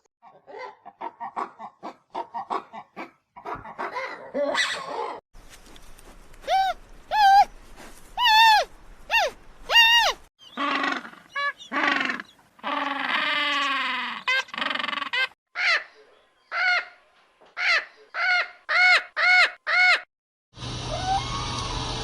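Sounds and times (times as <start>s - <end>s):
animal calls: 8.2s - 17.0s.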